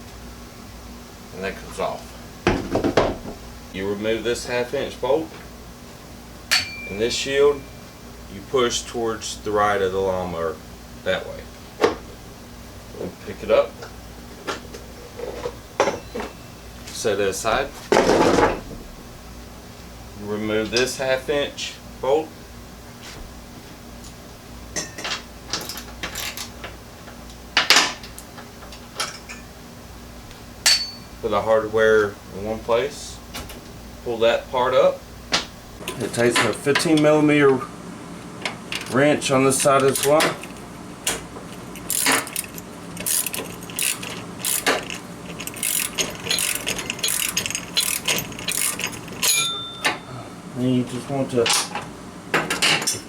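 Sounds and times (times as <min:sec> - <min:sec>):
metal tools clinking: 0:06.5 - 0:08.0, 0:14.3 - 0:18.6, 0:30.6 - 0:31.1, 0:41.5 - 0:50.2
hand ratchet clicking: 0:41.8 - 0:49.5.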